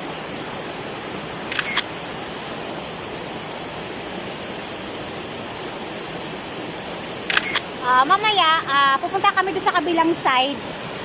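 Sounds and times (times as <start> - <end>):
small waterfall rushing: 0.0 - 11.0
sharp clicks: 1.5 - 1.8, 7.3 - 7.6.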